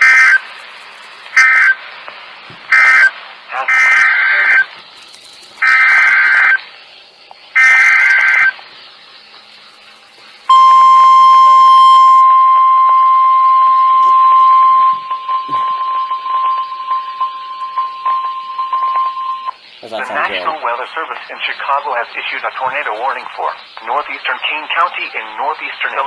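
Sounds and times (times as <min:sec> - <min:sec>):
steady warning alarm tone: 0:00.0 - 0:00.5, 0:01.3 - 0:01.8, 0:02.7 - 0:04.7, 0:05.6 - 0:06.7, 0:07.5 - 0:08.6, 0:10.5 - 0:26.0
buzzy digital data tones: 0:00.0 - 0:26.0.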